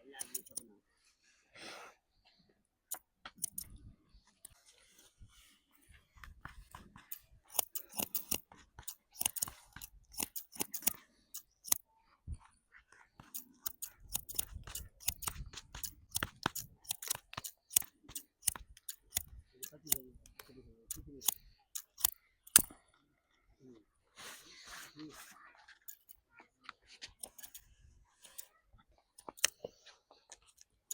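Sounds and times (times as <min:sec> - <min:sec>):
shears snipping hair: 0:00.0 - 0:00.6, 0:02.9 - 0:03.7, 0:06.4 - 0:11.8, 0:13.2 - 0:22.7, 0:24.3 - 0:26.2, 0:27.1 - 0:28.5, 0:29.2 - 0:29.7.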